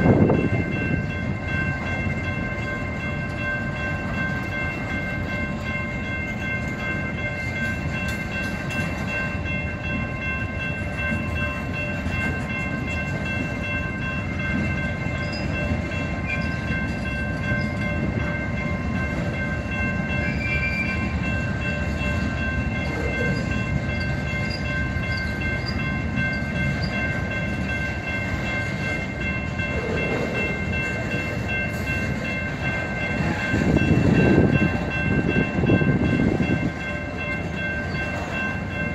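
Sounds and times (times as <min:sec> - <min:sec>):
freight train rumbling: 0:00.0 - 0:38.9.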